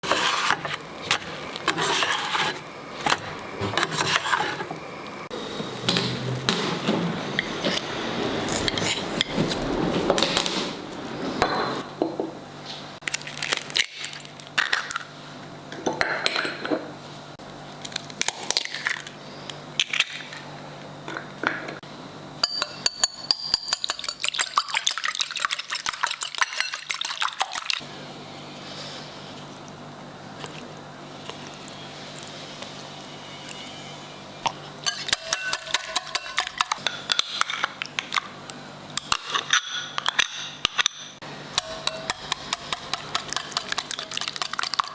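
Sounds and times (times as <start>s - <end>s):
utensils clinking against bowl: 15.8s - 17.0s, 22.4s - 27.9s, 33.4s - 44.9s.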